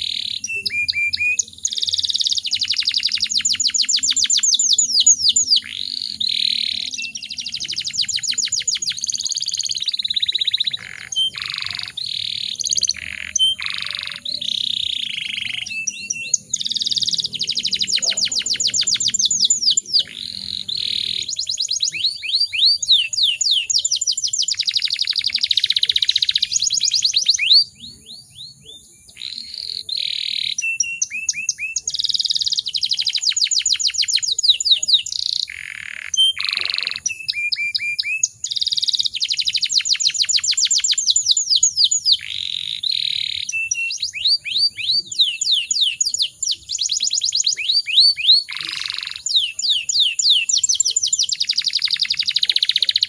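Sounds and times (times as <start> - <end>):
canary singing trills: 0.0 - 53.0.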